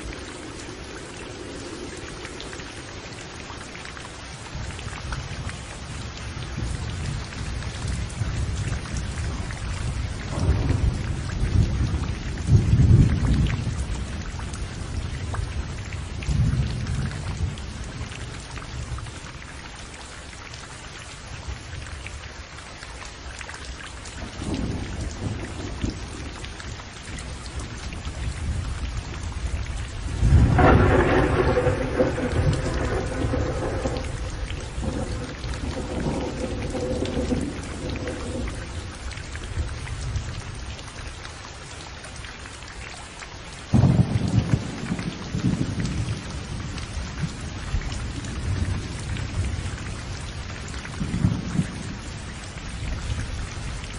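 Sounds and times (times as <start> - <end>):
heavy rain: 0.0 - 53.9
rolling thunder: 6.5 - 18.1, 24.2 - 26.4, 27.6 - 40.5, 43.7 - 50.2, 50.9 - 52.1.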